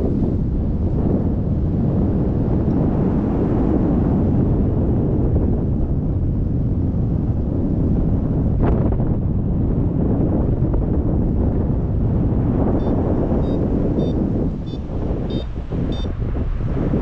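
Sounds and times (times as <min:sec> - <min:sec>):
strong wind buffeting microphone: 0:00.0 - 0:17.0.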